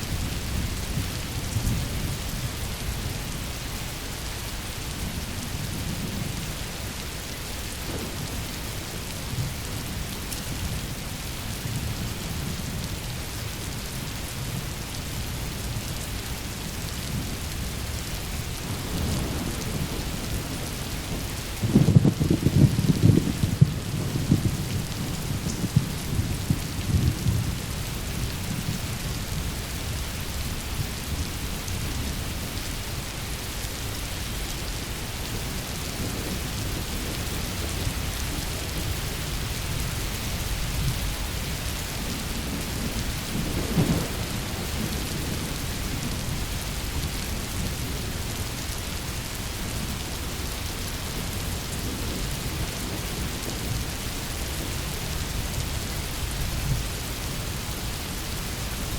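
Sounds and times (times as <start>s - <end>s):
heavy rain falling: 0.0s - 58.9s
rolling thunder: 5.1s - 11.0s, 16.9s - 32.5s, 35.9s - 48.2s.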